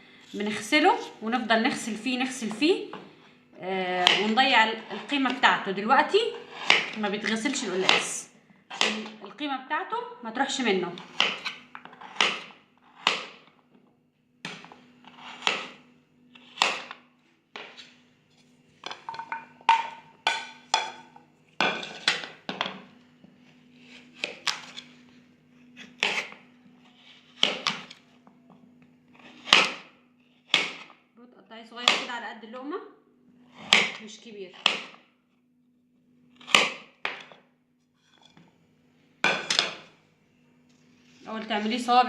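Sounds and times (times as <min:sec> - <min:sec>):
knife chopping on cutting board: 0:04.0 - 0:05.1, 0:06.5 - 0:07.0, 0:07.8 - 0:08.1, 0:08.7 - 0:09.2, 0:11.0 - 0:13.5, 0:14.4 - 0:15.8, 0:16.4 - 0:17.0, 0:23.9 - 0:24.8, 0:25.8 - 0:26.4, 0:27.0 - 0:28.0, 0:29.3 - 0:29.9, 0:30.5 - 0:31.0, 0:31.8 - 0:32.1, 0:33.6 - 0:34.0, 0:34.6 - 0:35.0, 0:36.4 - 0:37.4
faint low hum: 0:37.4 - 0:42.0.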